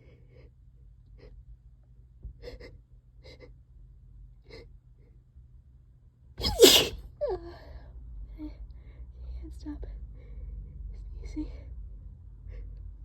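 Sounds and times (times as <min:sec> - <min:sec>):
person sneezing: 0:06.4 - 0:07.0.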